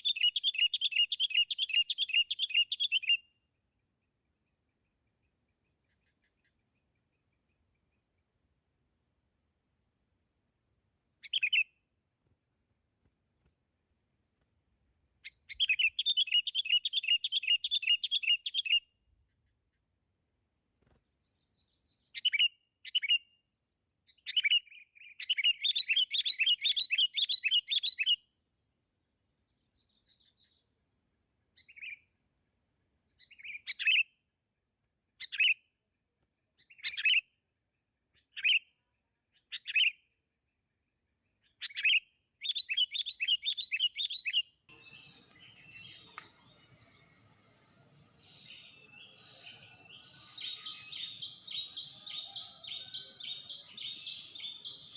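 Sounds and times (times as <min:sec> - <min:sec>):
bird chirping: 0:00.0 - 0:08.5, 0:11.1 - 0:11.8, 0:15.1 - 0:20.1, 0:20.8 - 0:23.4, 0:24.1 - 0:28.2, 0:29.4 - 0:30.8, 0:31.4 - 0:32.2, 0:32.9 - 0:34.2, 0:35.2 - 0:35.7, 0:36.4 - 0:37.4, 0:38.0 - 0:54.9.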